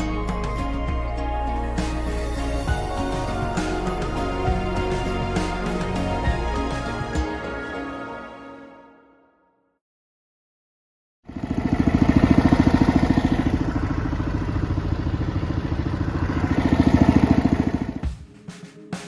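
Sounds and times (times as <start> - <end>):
engine running fast: 11.3 - 18.1.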